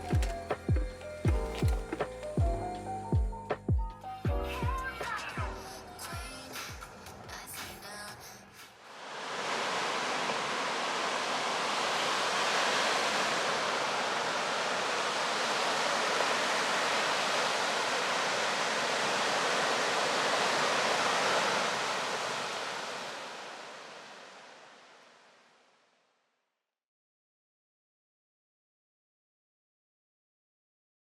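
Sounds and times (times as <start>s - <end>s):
sea surf rushing: 8.8s - 25.7s.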